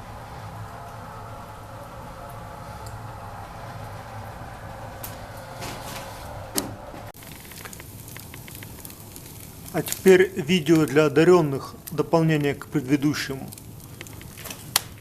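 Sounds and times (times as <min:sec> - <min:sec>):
fire crackling: 0:00.0 - 0:15.0
wood fire roaring: 0:00.0 - 0:15.0
sharp crack of wood: 0:13.5 - 0:15.0.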